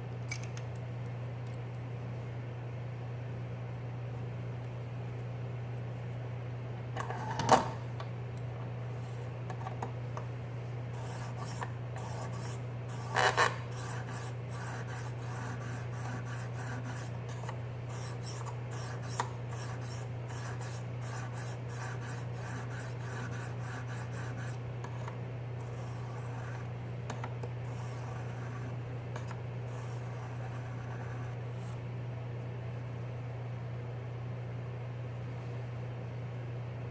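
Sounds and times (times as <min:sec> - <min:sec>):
steady low hum: 0:00.0 - 0:36.9
sharpener rasping on knife edge: 0:11.0 - 0:24.6.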